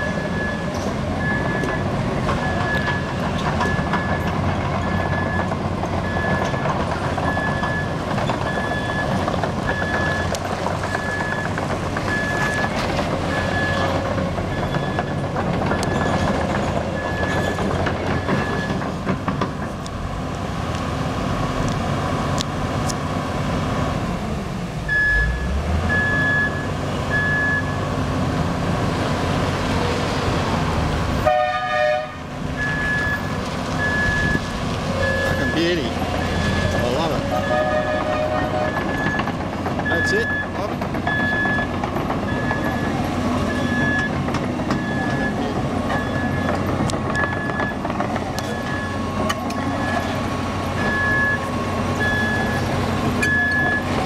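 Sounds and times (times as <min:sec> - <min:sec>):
excavator diesel engine running: 0:00.0 - 0:54.0
travel alarm beeping: 0:07.3 - 0:12.7, 0:24.9 - 0:27.8, 0:32.6 - 0:39.3, 0:39.9 - 0:44.2, 0:44.8 - 0:50.2, 0:50.8 - 0:53.9
horn blast: 0:31.2 - 0:32.3, 0:37.1 - 0:38.8.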